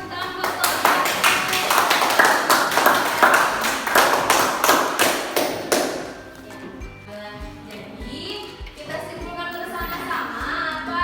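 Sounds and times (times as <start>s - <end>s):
hands clapping in rhythm: 0.0s - 6.5s
quiet music: 0.0s - 11.0s.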